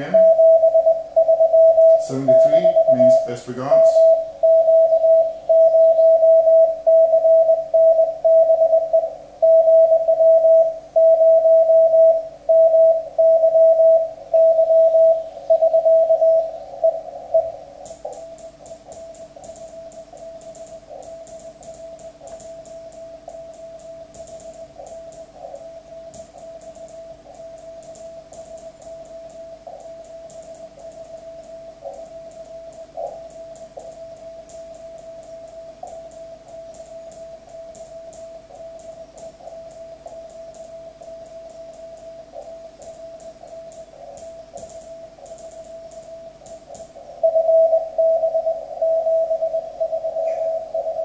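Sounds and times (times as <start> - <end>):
morse code tone: 0.0 - 38.8, 47.1 - 51.0
faint morse signal: 0.0 - 51.0
radio hiss and crackle: 1.9 - 4.2, 16.5 - 47.3.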